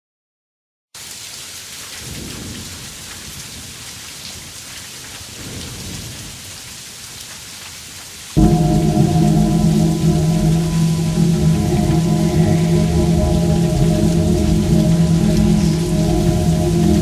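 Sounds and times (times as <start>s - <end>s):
steady rain: 1.0s - 17.0s.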